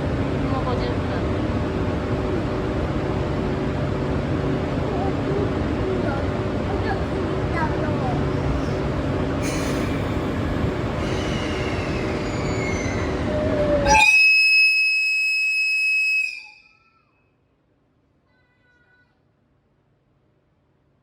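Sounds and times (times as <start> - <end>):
train rumble: 0.0 - 14.4
locomotive whistle blast: 11.1 - 17.0.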